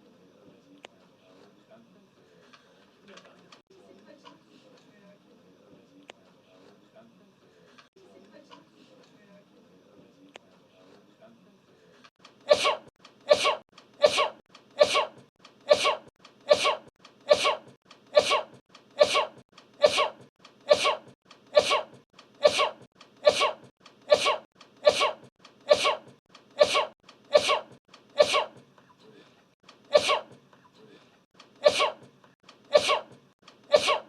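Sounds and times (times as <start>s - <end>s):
short sneezes: 12.5s - 28.6s, 29.9s - 30.4s, 31.6s - 32.1s, 32.7s - 34.0s.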